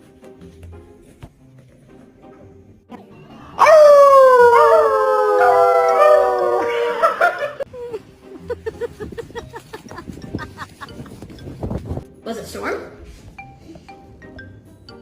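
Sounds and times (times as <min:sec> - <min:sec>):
dog howling: 0:03.5 - 0:07.7.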